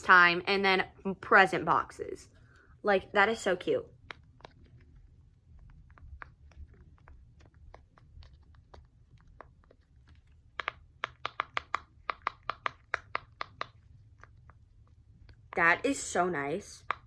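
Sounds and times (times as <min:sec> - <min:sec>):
silicone fidget bubbles popping: 0:05.4 - 0:15.7.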